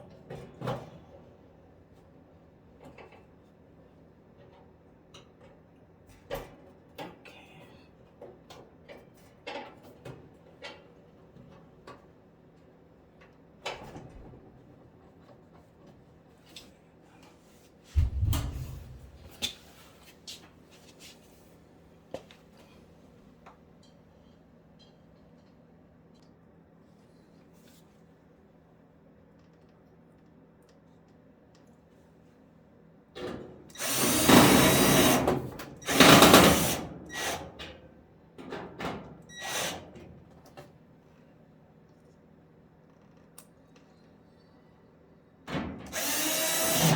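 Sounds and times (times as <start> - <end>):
heavy thump: 18.0 - 19.4
power drill running in bursts: 33.8 - 37.4, 39.4 - 39.8, 45.9 - 46.9.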